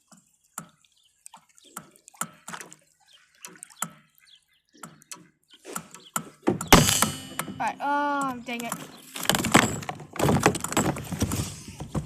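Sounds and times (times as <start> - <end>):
water splashing and dripping: 0.0 - 12.0
sharp knock: 6.6 - 7.8.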